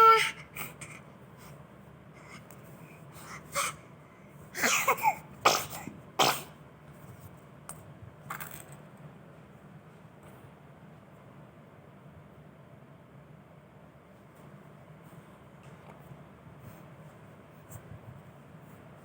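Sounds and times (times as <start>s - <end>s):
baby sneezing: 3.5s - 3.8s, 4.6s - 6.6s.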